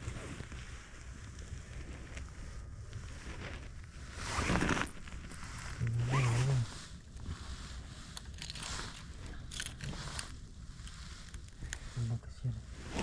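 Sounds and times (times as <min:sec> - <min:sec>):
wind rumbling on microphone: 0:00.0 - 0:13.0
zip-like rustle: 0:03.2 - 0:12.1, 0:12.7 - 0:13.0.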